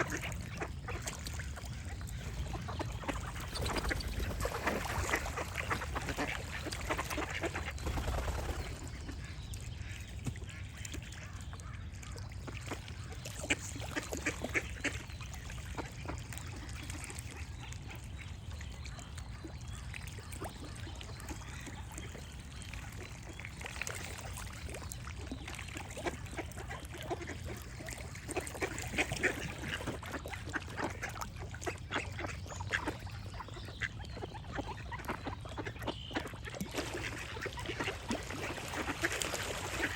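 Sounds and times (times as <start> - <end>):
ducks quacking: 0.0 - 15.1, 26.0 - 39.9.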